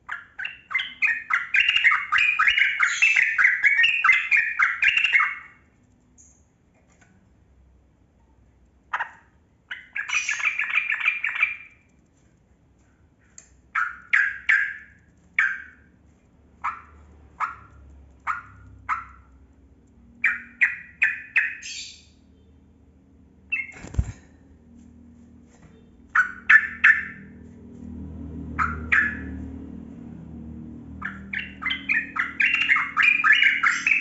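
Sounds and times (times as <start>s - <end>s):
bulbul singing: 0.1s - 5.6s, 9.7s - 11.8s, 20.1s - 22.6s, 31.0s - 34.0s.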